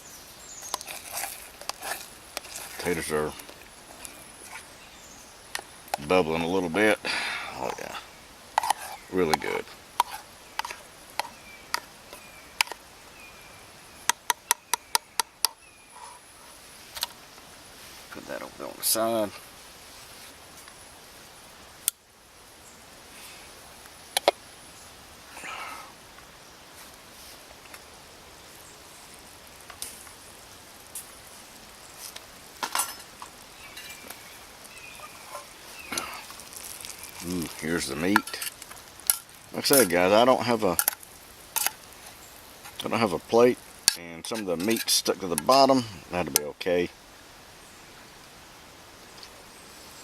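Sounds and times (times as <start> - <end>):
food sizzling in metal cup: 0.0 - 6.5, 8.4 - 17.3, 27.7 - 45.8
utensil clinking on metal: 35.3 - 40.0.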